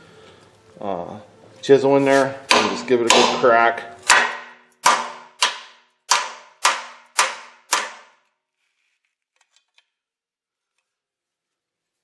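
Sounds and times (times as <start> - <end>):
hammer striking steel chisel: 2.4 - 8.2.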